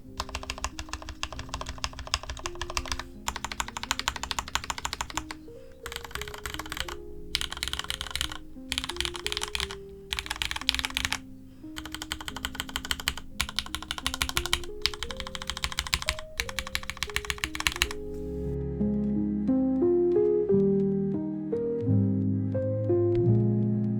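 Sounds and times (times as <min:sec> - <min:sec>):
mechanical keyboard typing: 0:00.0 - 0:18.6
soft background music: 0:00.0 - 0:23.9.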